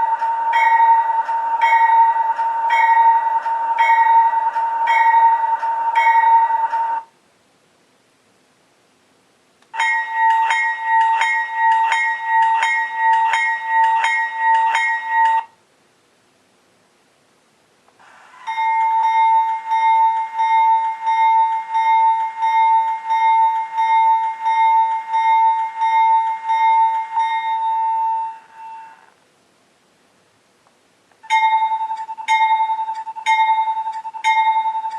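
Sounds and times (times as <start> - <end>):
locomotive bell ringing through speaker: 0.0 - 7.1, 9.8 - 15.5, 18.5 - 29.1, 31.2 - 34.9.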